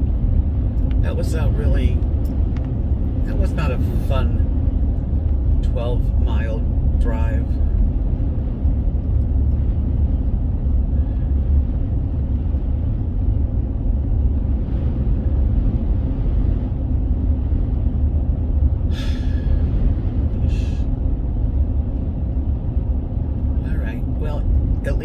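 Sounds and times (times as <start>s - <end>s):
car road noise: 0.0s - 25.0s
wind buffeting car: 0.0s - 25.0s.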